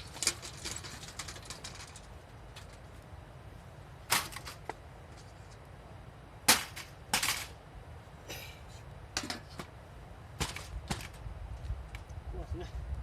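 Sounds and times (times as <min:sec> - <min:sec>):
scraping rustle: 0:00.0 - 0:03.0, 0:04.1 - 0:05.7.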